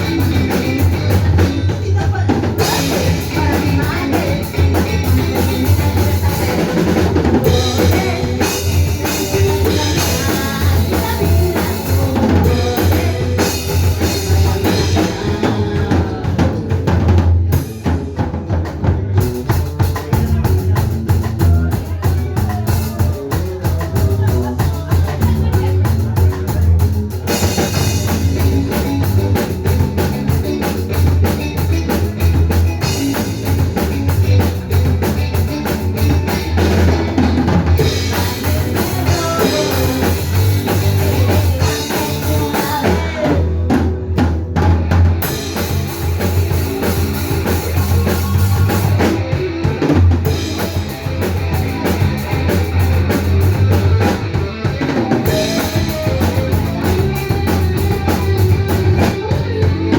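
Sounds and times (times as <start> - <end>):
band playing live: 0.0 - 59.9
drum kit: 0.0 - 59.9.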